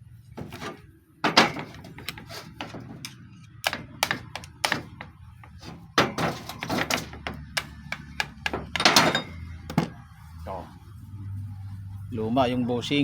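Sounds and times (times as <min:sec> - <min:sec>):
loose engine part clacking: 0:00.4 - 0:10.0.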